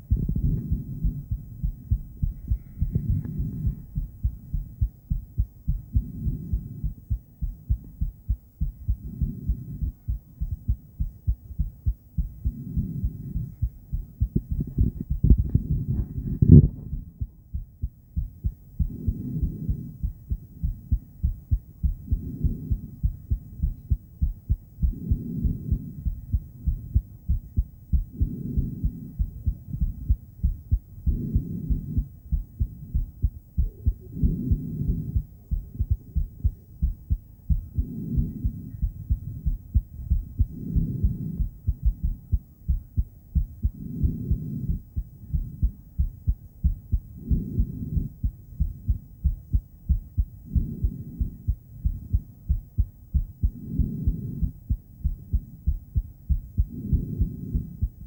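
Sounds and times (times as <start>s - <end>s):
heartbeat whooshing pulses: 0.0s - 58.0s.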